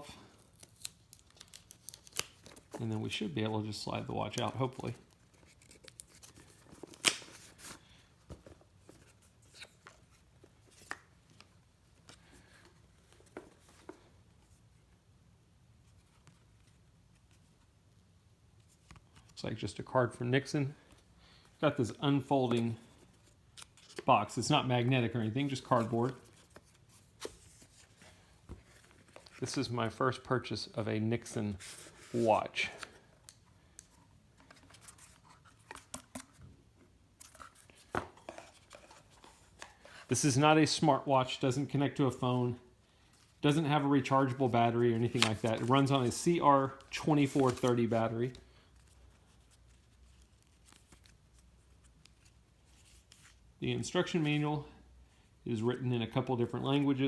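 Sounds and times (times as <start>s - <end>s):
paper envelope rustling: 0.4s - 3.5s, 4.2s - 14.0s, 31.2s - 36.4s, 37.2s - 40.3s, 43.2s - 53.4s.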